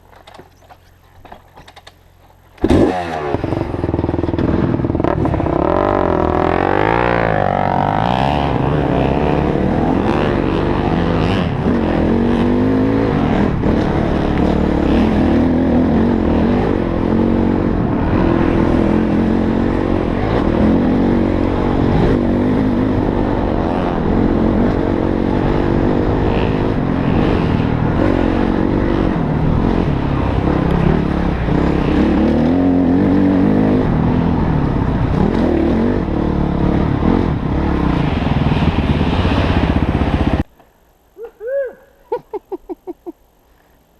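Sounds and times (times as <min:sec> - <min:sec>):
motorcycle engine revving: 0:01.3 - 0:40.5.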